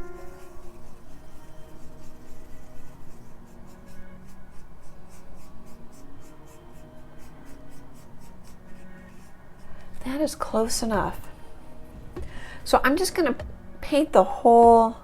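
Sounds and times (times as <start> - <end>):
soft background music: 0.0 - 15.0
paintbrush dabbing on canvas: 0.2 - 9.8.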